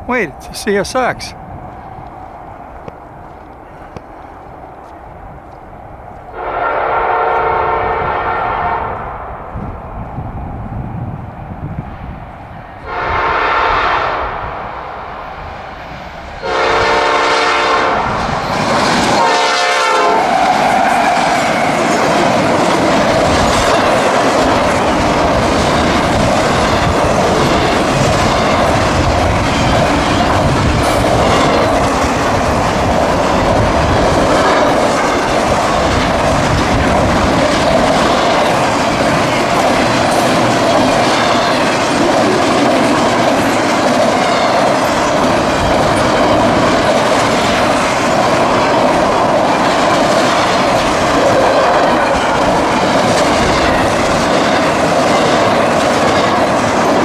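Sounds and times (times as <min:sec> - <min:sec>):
train passing: 0:00.0 - 0:57.0
train horn blasts: 0:06.3 - 0:09.3, 0:12.8 - 0:14.6, 0:16.4 - 0:18.1, 0:19.1 - 0:20.9
wheels clicking over rail joints: 0:20.2 - 0:57.0.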